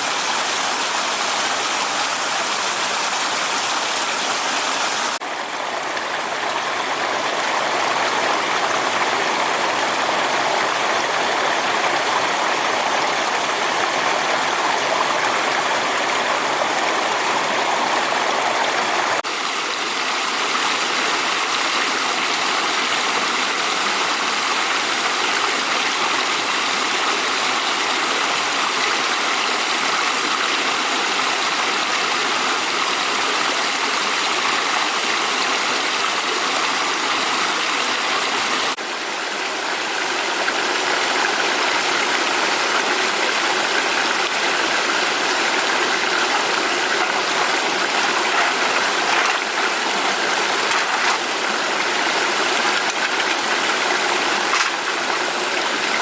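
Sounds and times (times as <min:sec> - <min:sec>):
fast-flowing water rushing: 0:00.0 - 0:56.0.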